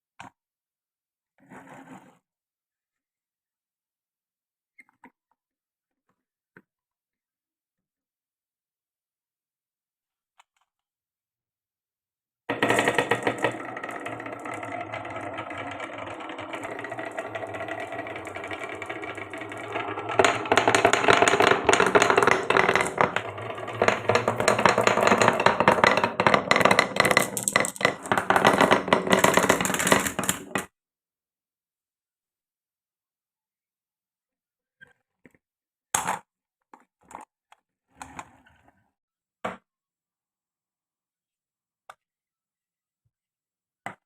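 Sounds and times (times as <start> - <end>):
marbles clattering down wooden run: 12.5 - 30.7.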